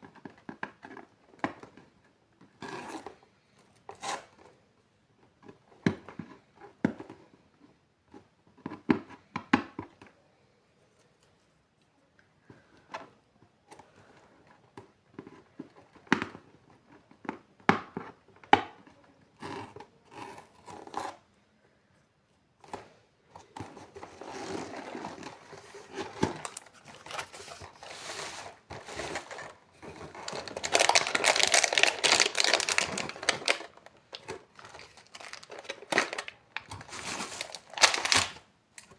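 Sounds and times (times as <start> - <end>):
wrapping crinkling and tearing: 24.1 - 38.9
plastic eggs clicking and tapping: 30.0 - 38.9.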